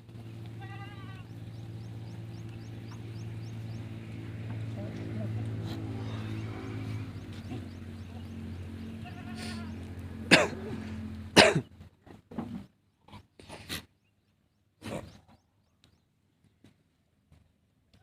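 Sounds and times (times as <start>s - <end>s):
goats bleating: 0.5s - 1.3s, 8.8s - 11.0s.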